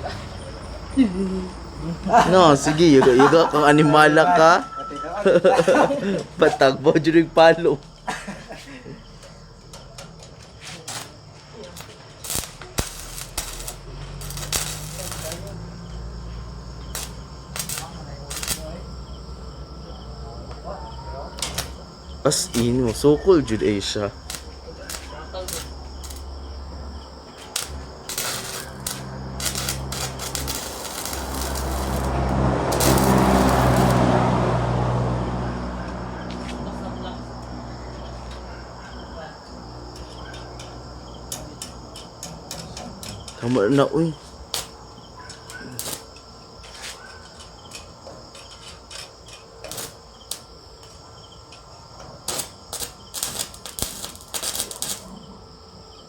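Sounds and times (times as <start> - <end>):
arc welding crackling: 7.4 - 19.7, 20.6 - 34.7, 39.5 - 55.2.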